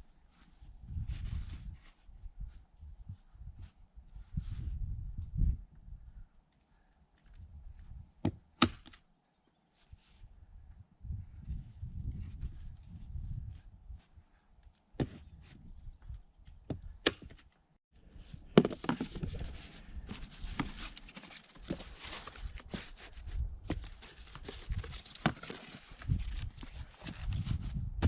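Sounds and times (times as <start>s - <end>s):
sharp knocks and thuds: 15.0s - 15.3s
rustling and scraping: 18.2s - 28.0s.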